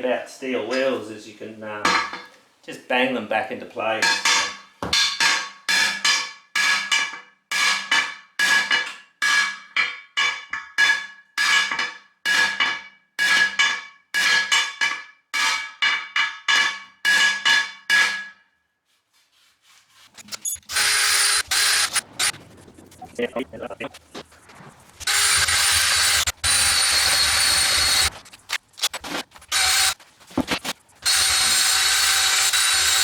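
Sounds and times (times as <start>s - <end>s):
hammer striking steel rim: 4.0s - 18.4s.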